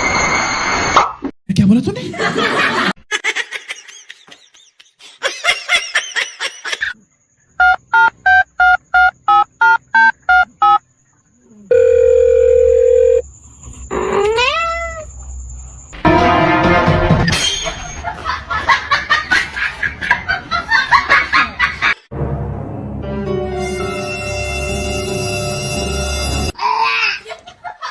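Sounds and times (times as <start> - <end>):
rising squeal: 0.0 - 1.0
steady dial tone: 11.7 - 13.2.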